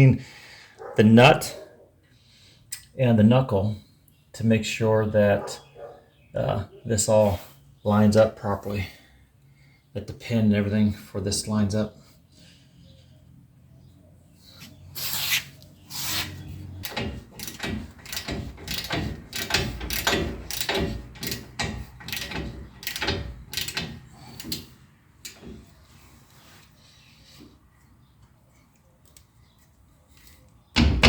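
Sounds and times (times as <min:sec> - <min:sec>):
hand tools clicking and scraping: 0:15.0 - 0:26.8.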